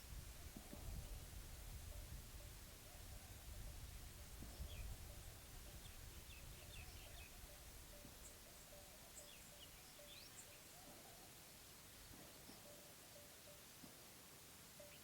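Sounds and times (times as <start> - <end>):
low steady hiss: 0.0 - 15.0
faint bird chirps: 4.4 - 13.9, 14.7 - 15.0.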